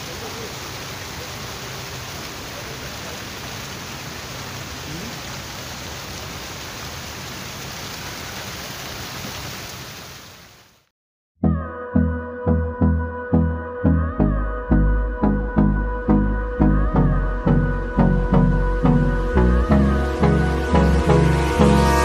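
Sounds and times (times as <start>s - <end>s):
water fountain splashing: 0.0s - 10.9s.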